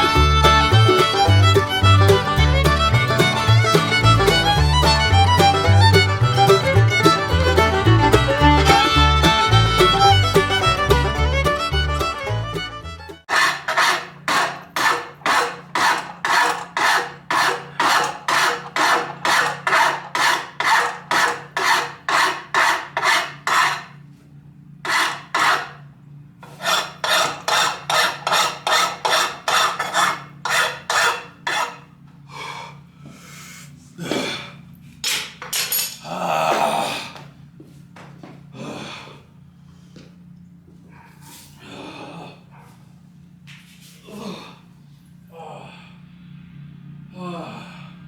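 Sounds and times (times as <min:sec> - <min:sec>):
file scraping steel blade: 0:13.3 - 0:24.0, 0:24.9 - 0:25.8, 0:26.4 - 0:31.9.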